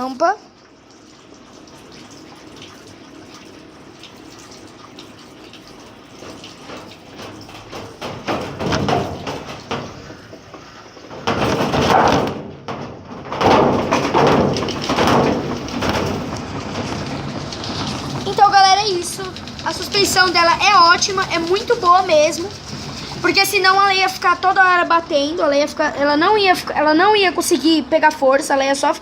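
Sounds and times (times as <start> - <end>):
washing machine spinning: 0.0 - 29.0
water rushing and splashing: 13.4 - 27.5.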